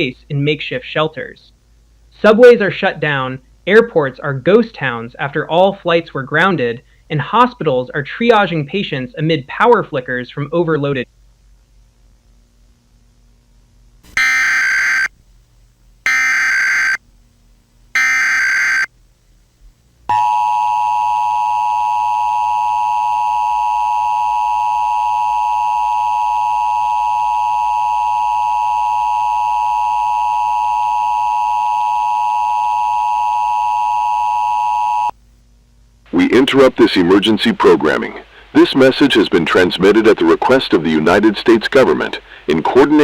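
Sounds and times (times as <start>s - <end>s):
data bursts: 14.2s - 15.1s, 16.1s - 17.0s, 18.0s - 18.9s
two-tone alert signal: 14.2s - 15.1s, 16.1s - 17.0s, 18.0s - 18.9s.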